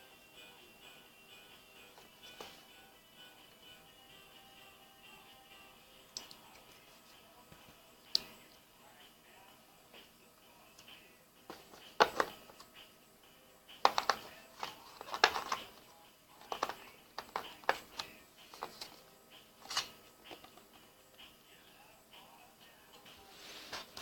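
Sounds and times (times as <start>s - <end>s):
keyboard clicks and knocks: 11.5s - 12.6s, 13.8s - 15.8s, 16.4s - 19.0s.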